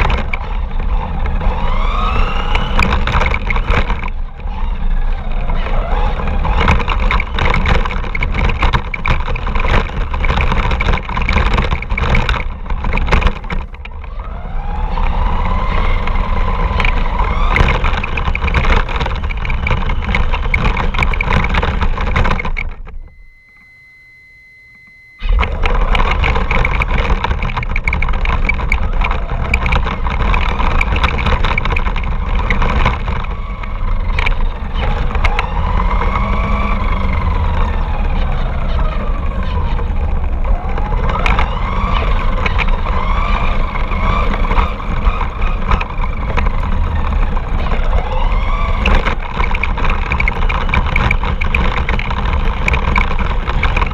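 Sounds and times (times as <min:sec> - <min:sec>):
wheels rumbling over ground: 0:00.0 - 0:24.1, 0:24.8 - 0:53.9
electric motor whine: 0:00.0 - 0:53.9
faint steady tone: 0:19.1 - 0:29.9.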